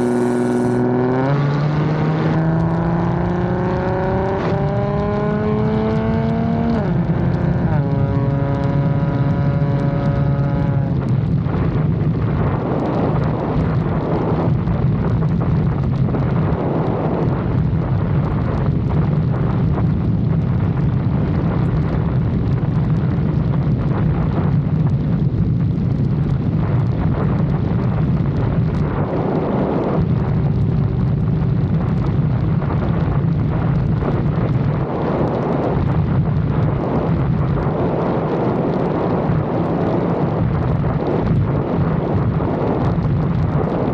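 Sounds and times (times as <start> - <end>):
low engine drone: 0.0 - 13.5
road noise: 0.0 - 43.9
wind rush over microphone: 0.0 - 43.9.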